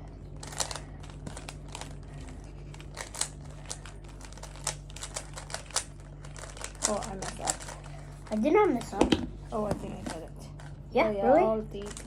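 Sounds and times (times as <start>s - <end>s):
puzzle cube clicking: 2.7s - 7.8s.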